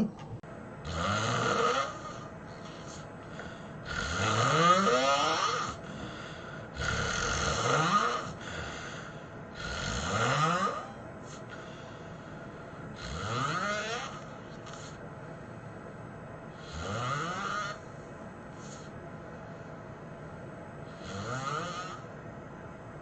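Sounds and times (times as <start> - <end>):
person snoring heavily: 0.8 - 12.3, 12.9 - 15.0, 16.6 - 17.8, 20.9 - 22.1.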